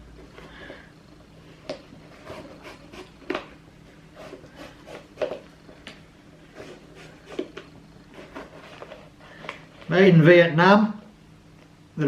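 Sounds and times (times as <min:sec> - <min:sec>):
laces rubbing and scuffing: 0:01.6 - 0:09.9.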